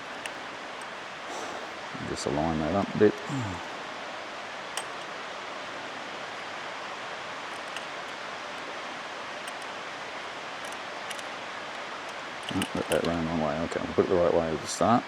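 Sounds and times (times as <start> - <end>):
steady background hiss: 0.0 - 15.0
small clicks of chain handling: 7.4 - 8.7, 9.4 - 9.8, 10.5 - 13.2.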